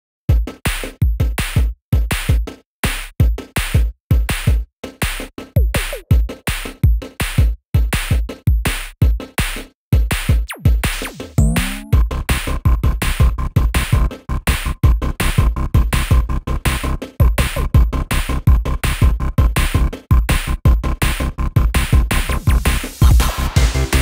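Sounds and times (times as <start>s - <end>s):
electronic music with drum-machine beat: 0.3s - 12.1s, 12.7s - 24.0s
rising synth sweep: 11.4s - 12.0s.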